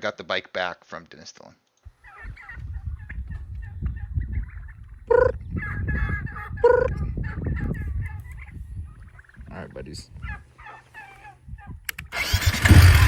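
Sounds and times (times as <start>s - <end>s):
fowl calling: 1.9s - 7.4s, 10.1s - 12.3s.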